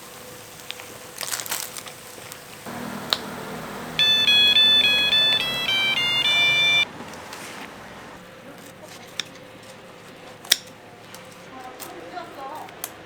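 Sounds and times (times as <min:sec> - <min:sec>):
electronic beeping jingle: 0:02.7 - 0:06.8.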